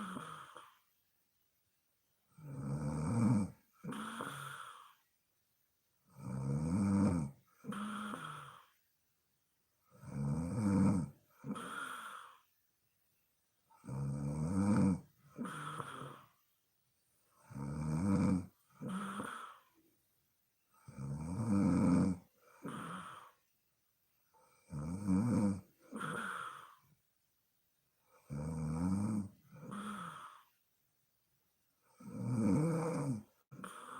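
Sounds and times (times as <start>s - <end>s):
woman snoring: 0.0s - 0.9s, 2.3s - 5.0s, 6.1s - 8.8s, 9.9s - 12.5s, 13.7s - 16.4s, 17.4s - 19.9s, 20.8s - 23.4s, 24.4s - 26.9s, 28.1s - 30.6s, 31.8s - 33.9s.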